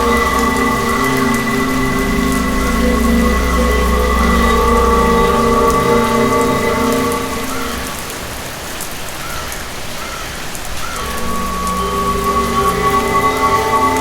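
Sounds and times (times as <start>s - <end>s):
low rumble: 0.0s - 8.0s, 11.0s - 14.0s
drone of held tones: 0.0s - 8.4s, 10.9s - 14.0s
steady rain pattering: 0.0s - 14.0s.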